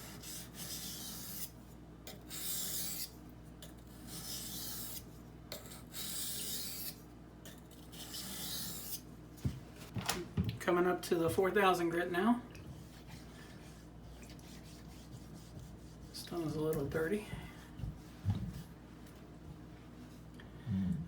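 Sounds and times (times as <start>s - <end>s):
knife rasping on whetstone: 0.0s - 1.5s, 2.2s - 3.1s, 4.1s - 5.0s, 5.6s - 7.0s, 7.9s - 9.0s, 12.8s - 16.2s.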